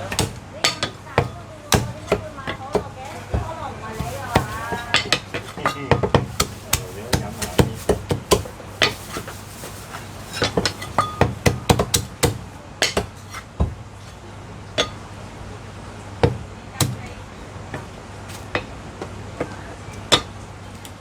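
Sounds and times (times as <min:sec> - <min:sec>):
cleaver chopping on wooden block: 0:00.0 - 0:03.5, 0:10.6 - 0:13.7, 0:16.2 - 0:17.1.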